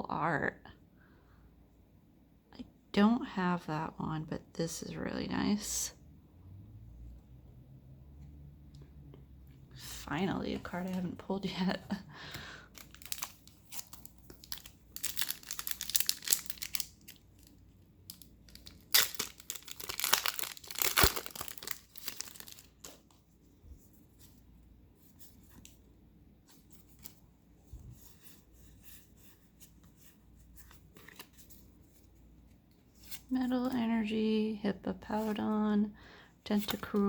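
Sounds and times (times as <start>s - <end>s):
foil wrapper tearing and crinkling: 12.8s - 17.5s, 18.1s - 23.0s.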